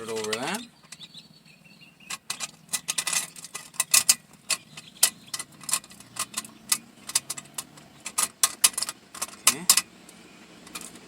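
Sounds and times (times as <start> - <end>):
metal clamp pieces clinking: 2.1 - 9.9.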